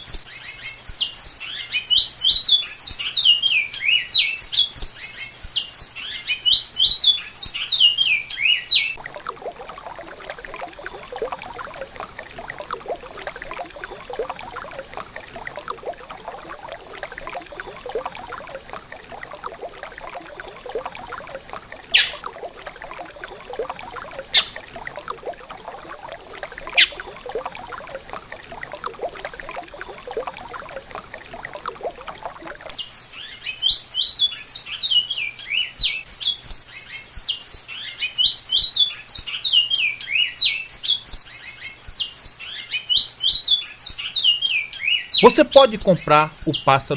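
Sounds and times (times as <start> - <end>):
finch singing whistled phrases: 22.0 - 22.2, 24.4 - 24.6, 26.8 - 27.0, 42.9 - 46.9.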